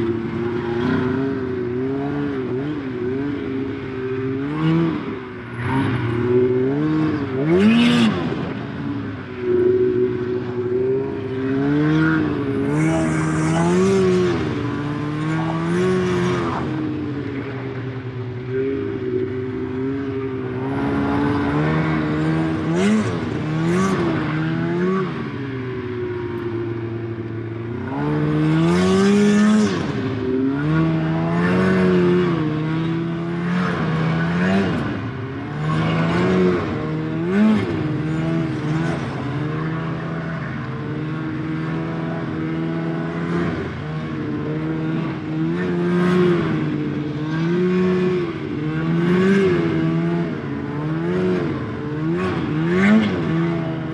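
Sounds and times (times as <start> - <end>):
snowmobile engine revving: 0.0 - 8.6, 9.4 - 16.9, 17.6 - 25.4, 27.5 - 53.9.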